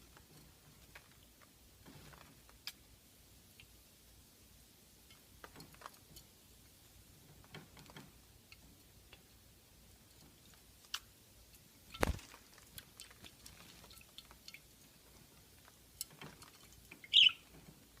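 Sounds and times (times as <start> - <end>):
water drips and splashes: 11.9 - 15.1, 15.9 - 17.6
bird high-pitched call: 17.1 - 17.5.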